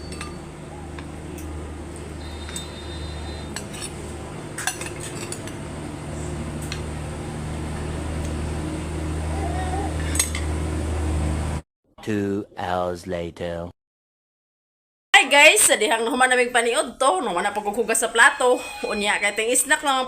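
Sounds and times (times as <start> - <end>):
steady low hum: 0.0 - 11.6
cutlery clinking on plates: 3.5 - 5.6.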